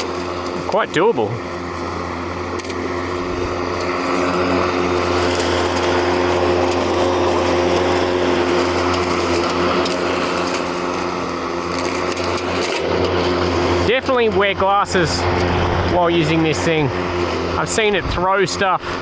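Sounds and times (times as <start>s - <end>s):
robotic lawn mower motors humming: 0.0s - 19.0s.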